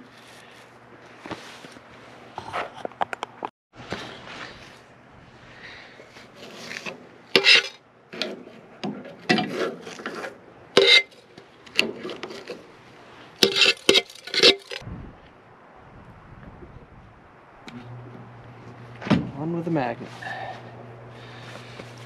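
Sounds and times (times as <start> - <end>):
metal scraping and rubbing: 6.3 - 12.7, 13.4 - 14.8
steel parts clanking: 7.4 - 8.3, 10.8 - 12.6, 13.4 - 14.8.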